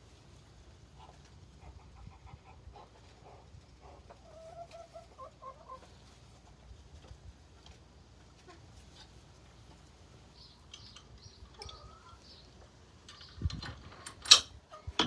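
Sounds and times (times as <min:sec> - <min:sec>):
chickens clucking: 0:00.1 - 0:13.9, 0:14.6 - 0:15.0.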